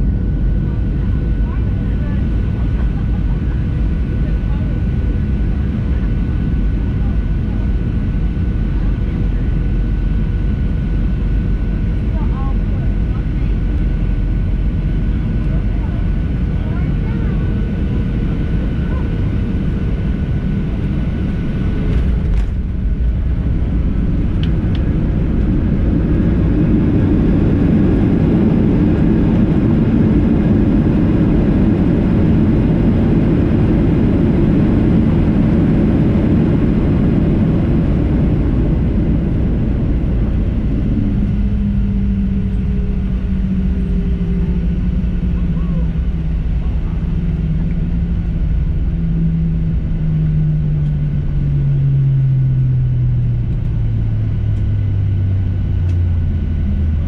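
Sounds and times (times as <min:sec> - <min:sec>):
jet engines roaring: 0:00.0 - 0:57.0.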